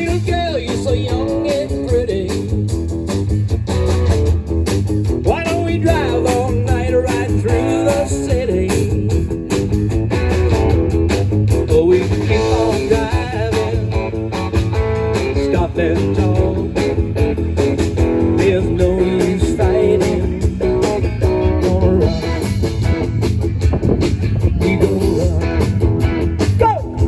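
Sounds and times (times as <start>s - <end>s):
person singing: 0.0s - 2.5s, 5.2s - 9.1s, 11.7s - 14.1s, 15.3s - 16.8s, 18.2s - 22.5s, 24.4s - 25.8s
blues-rock music with guitar: 0.0s - 27.0s.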